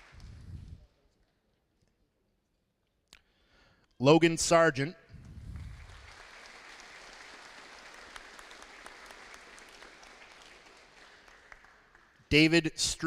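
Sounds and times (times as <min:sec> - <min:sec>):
faint audience applause: 0:00.0 - 0:00.8, 0:05.4 - 0:12.3.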